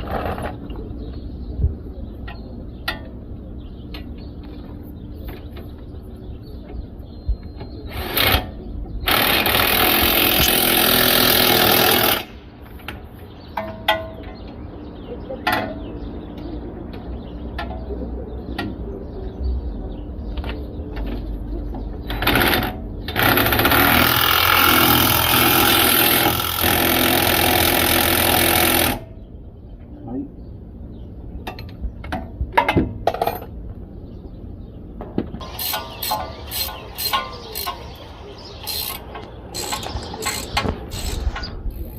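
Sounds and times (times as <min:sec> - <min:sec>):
impact wrench running: 0:09.1 - 0:12.3, 0:23.2 - 0:29.0, 0:35.4 - 0:38.0, 0:38.6 - 0:41.9.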